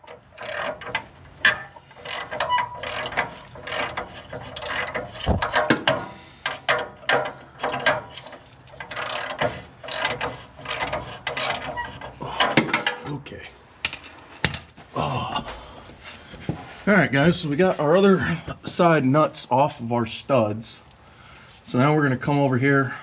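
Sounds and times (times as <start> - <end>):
hand ratchet wrench clicking: 0.1 - 5.8, 6.4 - 11.7.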